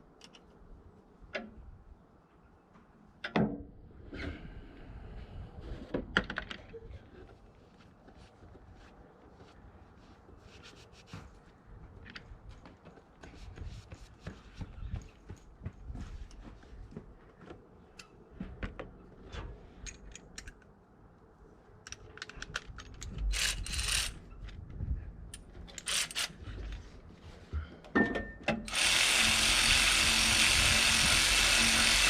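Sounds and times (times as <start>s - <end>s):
hand tools clicking and scraping: 25.4s - 26.8s.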